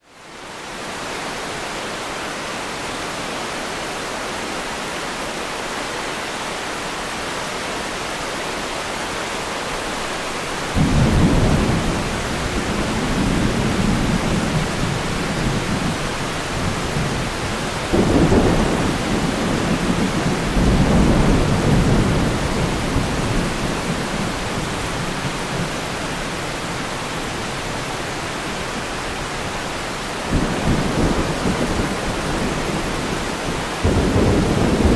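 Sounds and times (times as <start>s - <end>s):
rain hiss: 0.1s - 34.9s
thunder rumbling: 10.6s - 25.9s, 30.3s - 34.9s.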